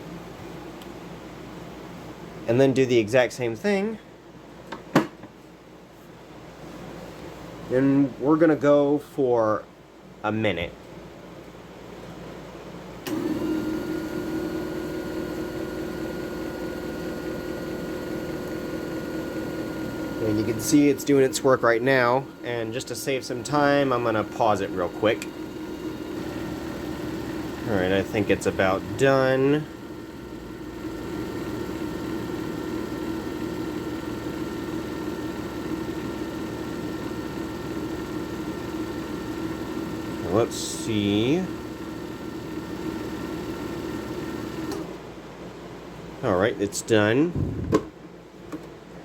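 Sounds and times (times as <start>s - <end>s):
disc repair machine motor hum: 13.0s - 44.9s.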